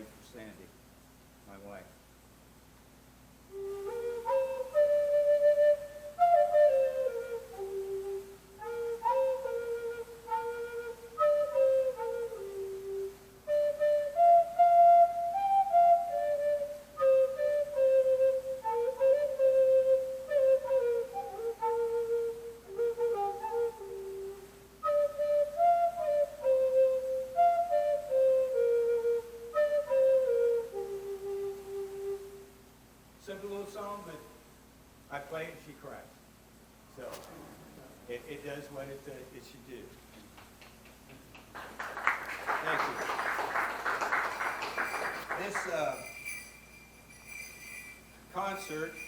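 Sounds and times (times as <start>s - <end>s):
flute melody: 3.5s - 32.6s, 41.6s - 49.0s.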